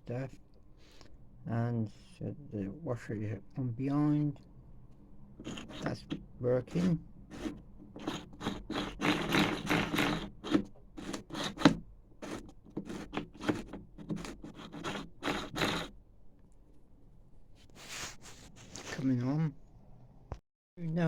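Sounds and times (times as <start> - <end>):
metal parts scraping and clicking: 8.0 - 11.6.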